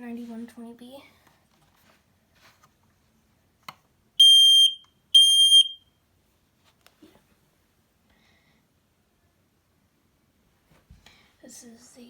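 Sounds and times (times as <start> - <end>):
smoke alarm click: 4.2 - 5.8
high-pitched smoke alarm beeps: 4.2 - 5.9.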